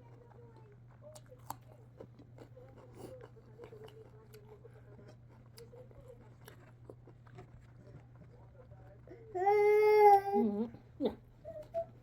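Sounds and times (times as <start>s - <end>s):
chewing and biting food: 0.0s - 9.1s
food crunching: 0.0s - 9.1s.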